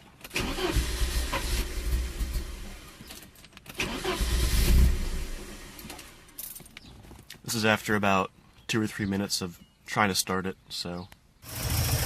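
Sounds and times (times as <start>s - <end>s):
car engine cranking by starter: 0.2s - 6.4s, 11.4s - 12.0s.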